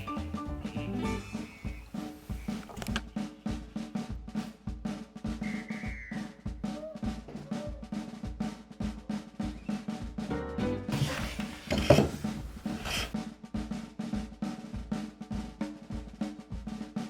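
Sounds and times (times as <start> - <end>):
snare hits: 0.0 - 3.3
music with steady drum beat: 0.0 - 17.0
kick drum: 13.3 - 16.8.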